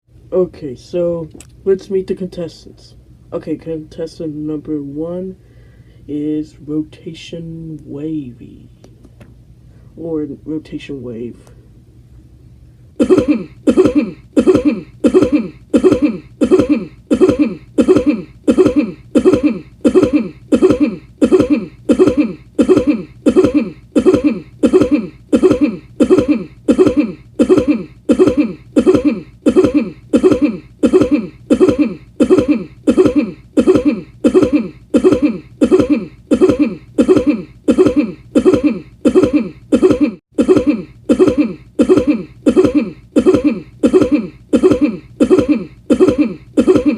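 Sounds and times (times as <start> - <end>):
man coughing: 13.0 - 46.9.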